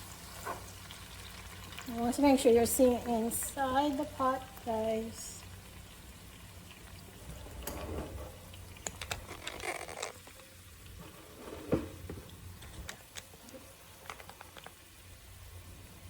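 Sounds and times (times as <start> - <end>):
utensil scraping a pot: 7.8 - 10.4, 11.0 - 12.2.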